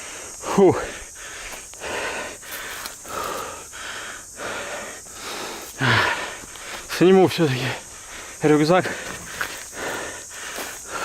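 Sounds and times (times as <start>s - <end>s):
person panting: 0.0s - 6.9s, 7.6s - 11.0s.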